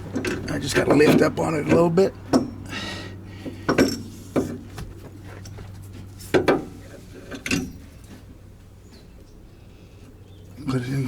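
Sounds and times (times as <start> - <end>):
metal parts knocking and clunking: 0.0 - 2.7, 3.4 - 7.9.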